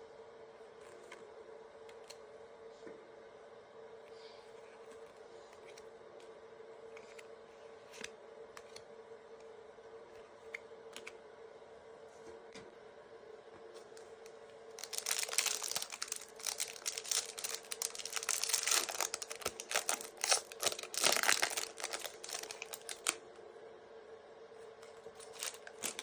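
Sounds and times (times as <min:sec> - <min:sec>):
faint steady hum: 0:00.0 - 0:26.0
foil wrapper crinkling and tearing: 0:14.8 - 0:23.2, 0:25.2 - 0:26.0.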